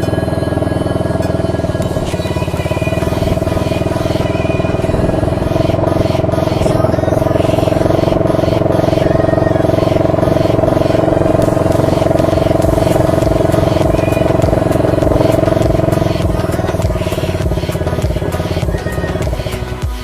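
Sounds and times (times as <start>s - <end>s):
quad bike engine running: 0.0s - 20.0s.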